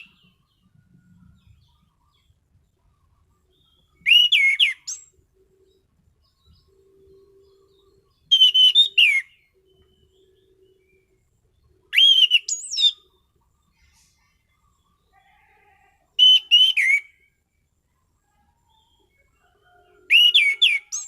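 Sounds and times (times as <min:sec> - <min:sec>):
thrush singing whistled notes: 0:00.0 - 0:00.6, 0:03.4 - 0:13.5, 0:16.2 - 0:17.7, 0:18.7 - 0:21.0.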